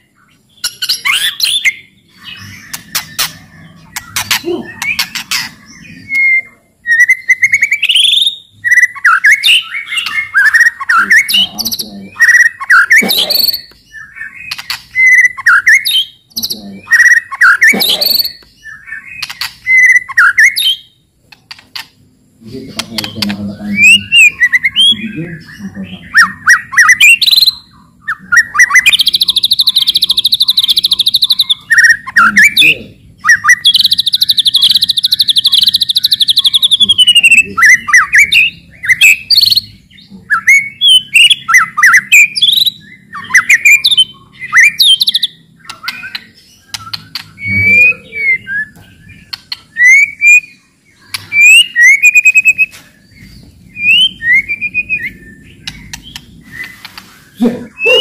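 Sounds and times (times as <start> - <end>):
bird song phrases and whistles: 0.0 - 21.0, 22.4 - 58.0
bird rattling chatters: 2.6 - 5.7, 14.5 - 15.0.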